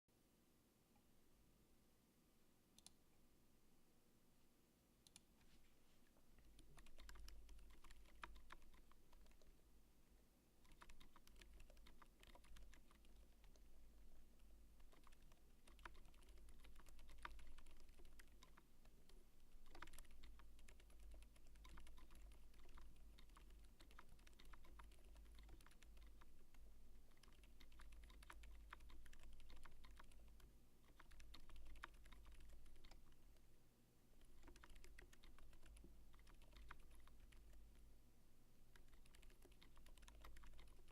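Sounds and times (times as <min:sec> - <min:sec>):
muted keyboard keystrokes: 0:06.6 - 0:09.5, 0:10.6 - 0:13.7, 0:14.8 - 0:18.6, 0:19.6 - 0:26.3, 0:27.1 - 0:33.1, 0:34.2 - 0:37.6, 0:38.8 - 0:40.9.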